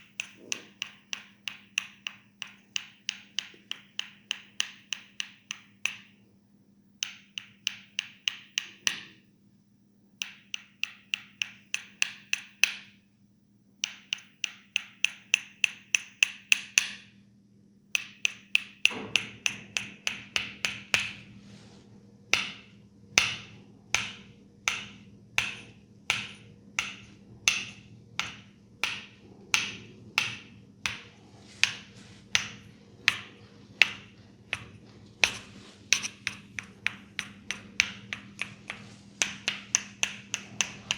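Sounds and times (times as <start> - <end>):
hands tapping on head: 22.4 - 40.9.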